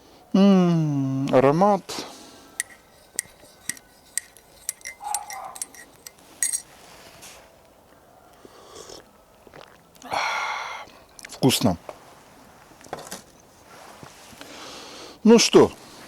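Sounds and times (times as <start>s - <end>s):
spoon clinking against cup: 2.6s - 6.7s.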